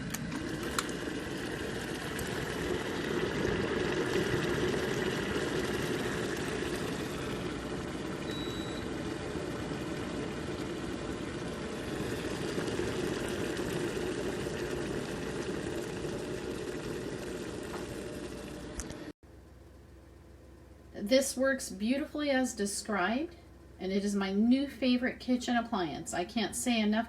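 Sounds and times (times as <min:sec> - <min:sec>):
electric kettle heating water: 0:00.0 - 0:19.2.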